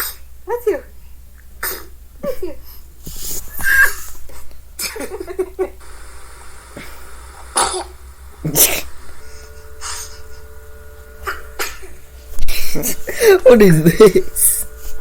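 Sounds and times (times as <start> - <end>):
baby sneezing: 0.0 - 0.3, 1.6 - 2.0, 7.6 - 7.9, 11.3 - 11.8.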